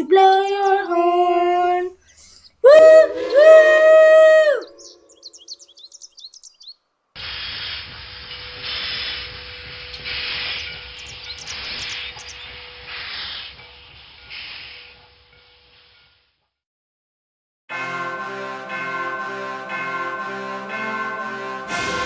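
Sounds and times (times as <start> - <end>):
birds chirping: 0.0 - 6.8, 8.2 - 13.3
steam locomotive hissing: 7.2 - 16.2.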